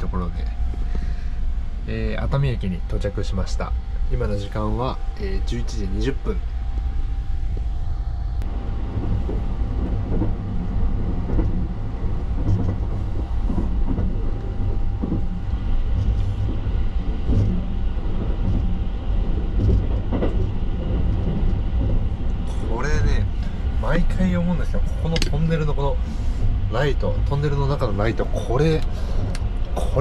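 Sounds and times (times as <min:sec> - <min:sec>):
faint steady hum: 0:00.0 - 0:30.0
train low rumble: 0:00.0 - 0:30.0.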